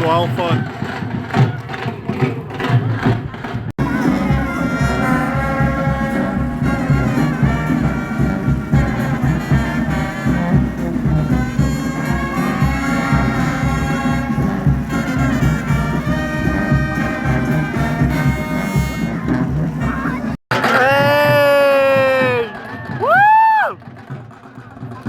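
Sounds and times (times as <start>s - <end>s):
steady drum beat: 0.0s - 25.0s
brass band playing: 3.4s - 22.5s
trumpets and trombones: 3.4s - 22.5s.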